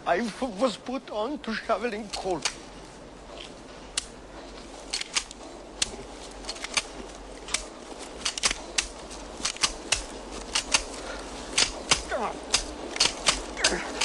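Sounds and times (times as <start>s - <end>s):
sharp mechanical clacks: 4.9s - 14.0s.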